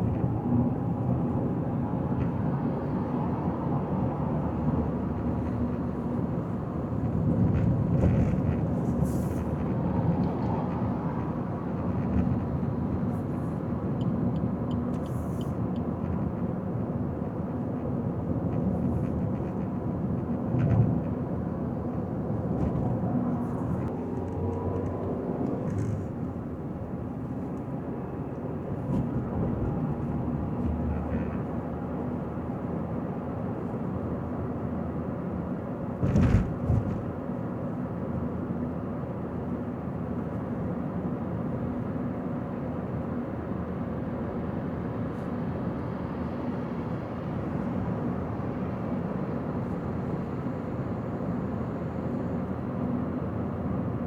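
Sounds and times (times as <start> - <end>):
car engine and tyre noise: 0.0 - 54.0.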